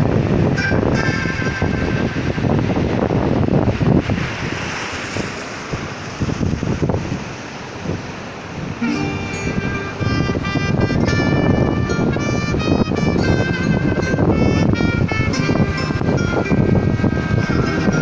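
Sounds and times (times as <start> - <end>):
surf rushing: 0.0 - 18.0
wind buffeting microphone: 0.0 - 18.0.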